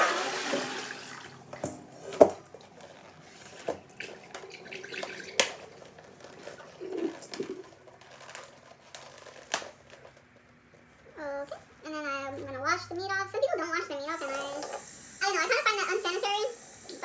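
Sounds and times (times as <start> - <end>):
water sloshing and dripping: 0.0 - 1.8, 2.4 - 8.3.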